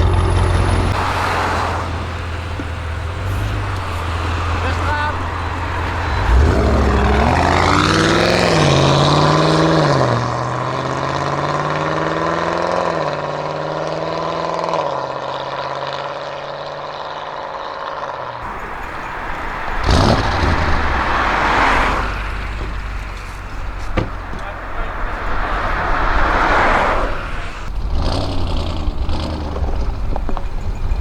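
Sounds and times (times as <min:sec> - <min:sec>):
car engine accelerating hard: 0:00.0 - 0:31.0
loud rushing noise: 0:23.8 - 0:27.7.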